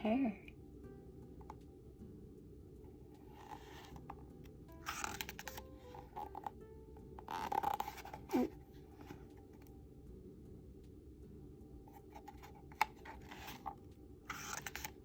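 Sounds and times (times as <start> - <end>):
page turning paper rustle: 3.3 - 4.1, 4.8 - 6.5, 7.2 - 9.2, 11.9 - 15.0.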